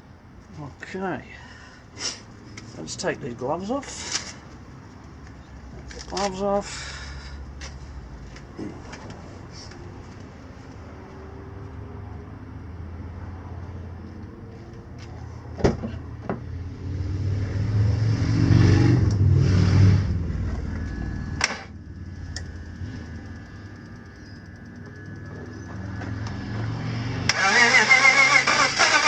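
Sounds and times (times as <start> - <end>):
car engine cranking and running unevenly: 20.0 - 29.0.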